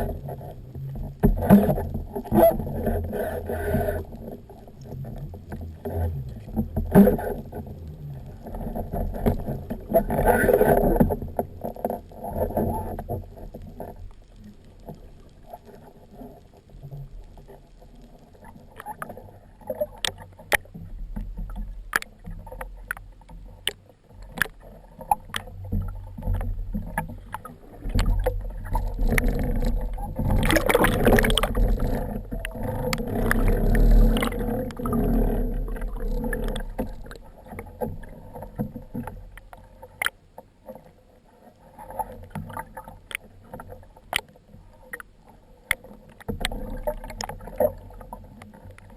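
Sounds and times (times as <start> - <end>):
underwater rush of water: 0.0 - 40.9, 41.6 - 48.9
sharp clicks and knocks: 18.8 - 40.5.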